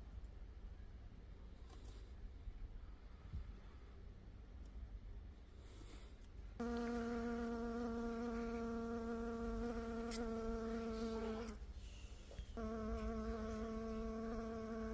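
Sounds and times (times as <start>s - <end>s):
honey bee buzzing: 6.6s - 11.6s, 12.6s - 14.9s.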